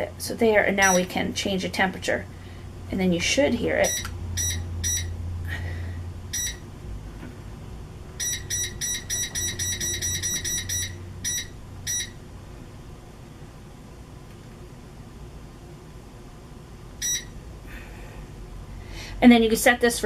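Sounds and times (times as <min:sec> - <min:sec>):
low steady hum: 0:00.0 - 0:20.0
heater control panel beeps: 0:00.8 - 0:01.2, 0:03.8 - 0:05.2, 0:06.3 - 0:06.7, 0:08.2 - 0:12.2, 0:17.0 - 0:17.4.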